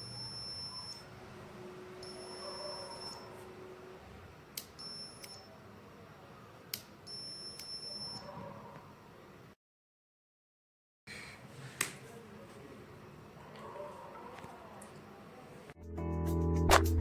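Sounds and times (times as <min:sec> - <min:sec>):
high-pitched buzzer beeps: 0:00.0 - 0:01.1, 0:02.0 - 0:03.4, 0:04.8 - 0:05.5, 0:07.1 - 0:08.2.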